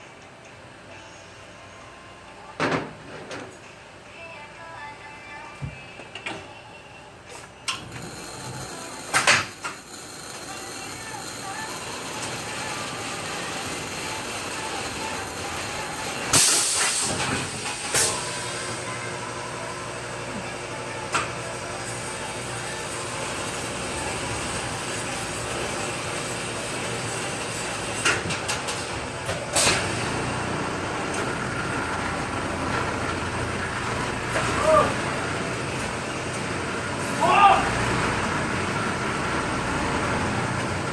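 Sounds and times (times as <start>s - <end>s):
loud hiss: 10.2s - 18.9s.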